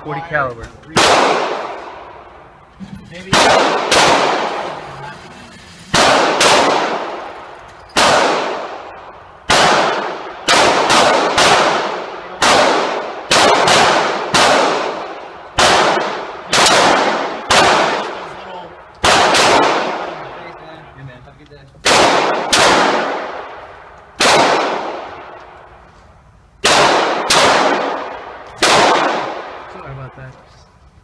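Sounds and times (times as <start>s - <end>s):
pistol shots echoing: 0.9s - 2.3s, 3.3s - 4.8s, 5.9s - 18.4s, 19.0s - 20.4s, 21.8s - 25.6s, 26.6s - 29.7s.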